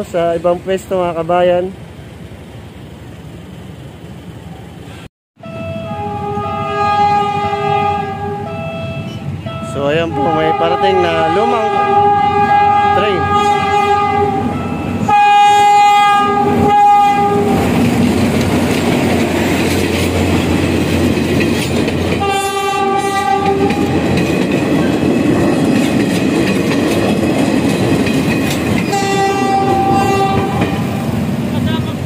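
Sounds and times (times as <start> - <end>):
train horn blasts: 5.4 - 17.7, 22.2 - 24.0, 28.8 - 31.0
train wheels clattering on track: 16.5 - 32.0.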